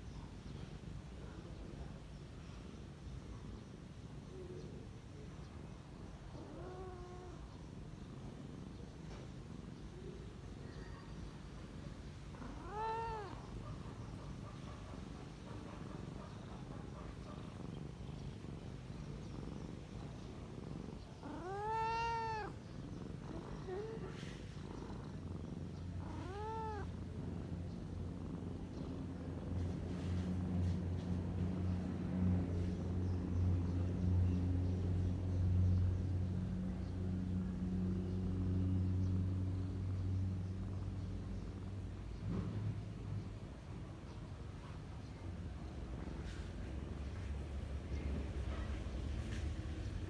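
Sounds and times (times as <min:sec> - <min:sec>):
kitten purring: 0:04.2 - 0:50.0
kitten mewing softly: 0:12.3 - 0:13.9, 0:21.0 - 0:22.6, 0:23.3 - 0:26.9
kitten meowing: 0:12.4 - 0:13.4, 0:21.2 - 0:22.6, 0:26.0 - 0:26.9.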